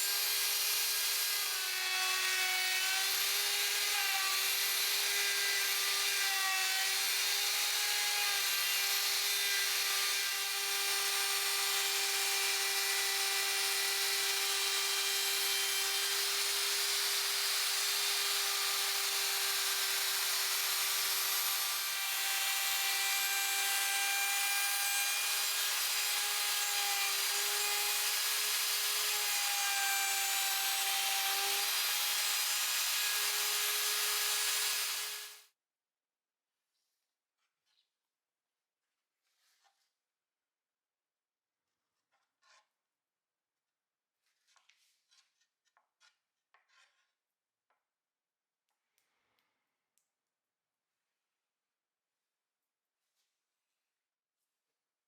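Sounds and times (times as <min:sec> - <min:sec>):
power tool motor whining: 0:11.1 - 0:35.4.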